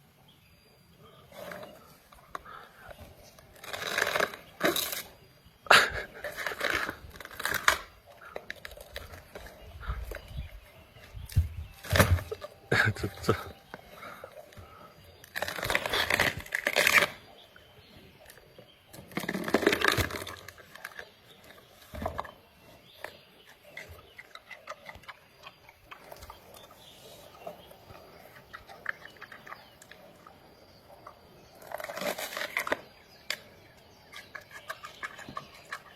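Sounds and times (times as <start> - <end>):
panda chewing and crunching: 31.5 - 35.9.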